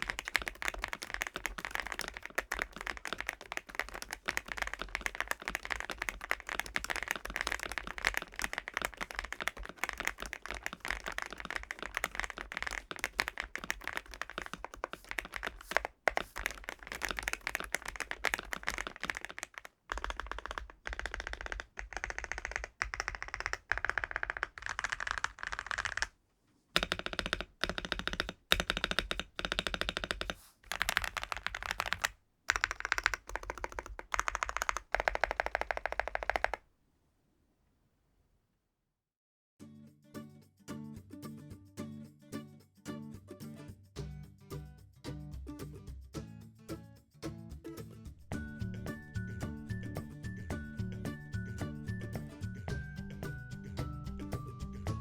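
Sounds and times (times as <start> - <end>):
mechanical keyboard typing: 0.0 - 26.1, 26.8 - 36.6.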